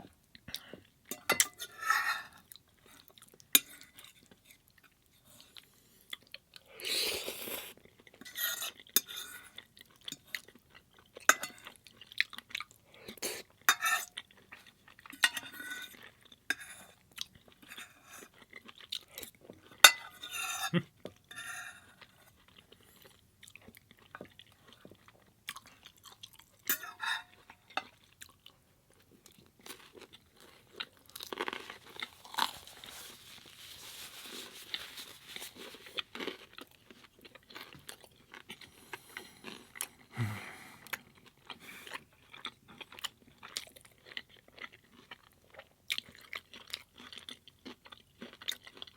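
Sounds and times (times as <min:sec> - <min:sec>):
chewing and crunching food: 0:00.0 - 0:48.9.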